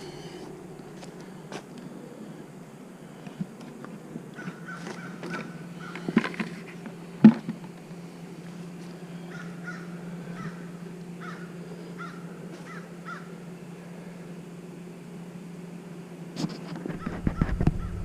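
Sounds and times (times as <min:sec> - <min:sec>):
honeybees humming: 0:00.0 - 0:18.0
crow cawing: 0:04.4 - 0:06.2, 0:09.2 - 0:13.4.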